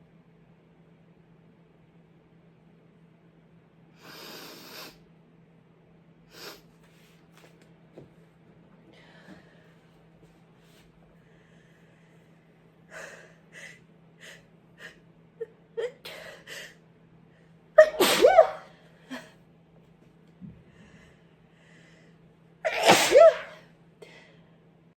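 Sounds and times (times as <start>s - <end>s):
person sniffing: 4.0s - 5.0s, 6.3s - 7.1s
loud sneeze: 17.8s - 18.8s, 22.7s - 23.6s.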